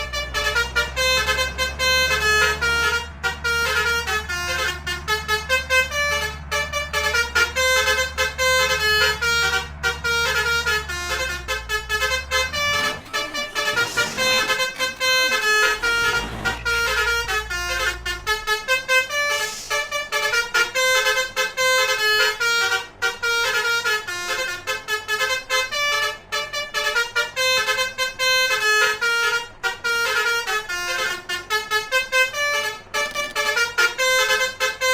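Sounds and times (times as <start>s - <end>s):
musical horn playing a tune: 0.1s - 21.2s.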